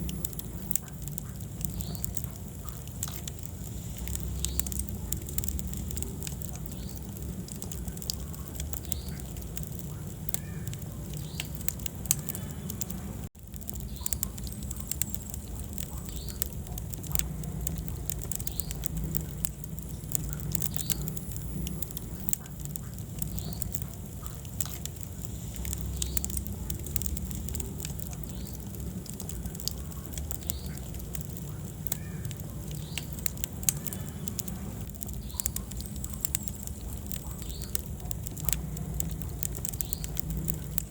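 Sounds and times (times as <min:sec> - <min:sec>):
fire crackling and popping: 0:00.0 - 0:40.9
low rumble of flame: 0:00.0 - 0:40.9.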